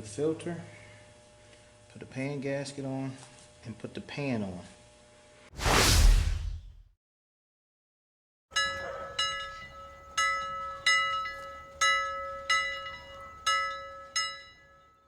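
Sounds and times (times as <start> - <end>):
ringing bell tones: 8.6 - 15.0.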